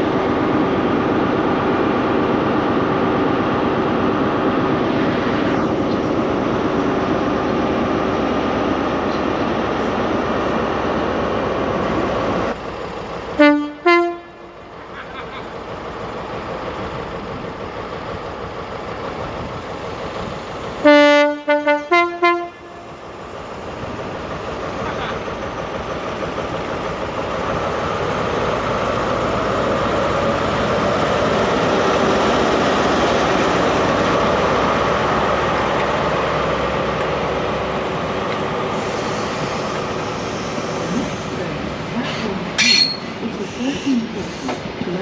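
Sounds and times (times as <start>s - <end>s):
train passing: 0.0s - 45.0s
two-tone train horn: 13.4s - 14.6s, 20.8s - 22.9s.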